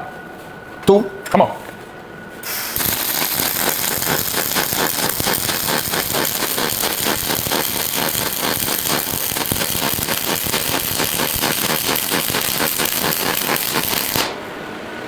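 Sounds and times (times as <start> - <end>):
welding arc crackling: 2.4 - 14.4.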